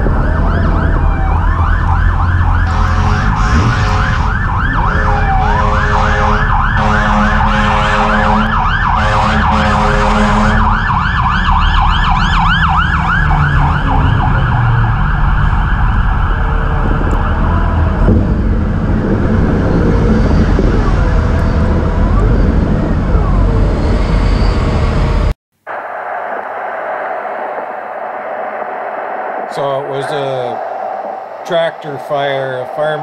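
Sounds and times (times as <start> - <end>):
fire engine siren yelping: 0.0 - 33.0
low rumble: 0.0 - 33.0
short horn blasts: 2.7 - 10.6.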